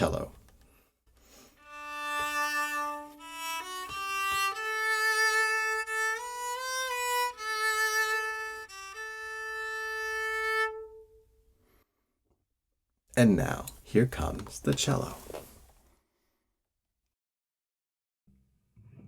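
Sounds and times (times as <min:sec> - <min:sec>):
bowed cello melody: 0:01.6 - 0:11.3.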